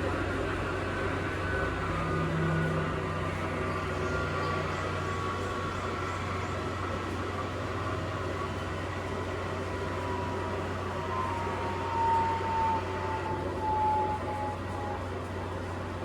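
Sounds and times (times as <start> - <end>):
faint whine: 9.5 - 16.0.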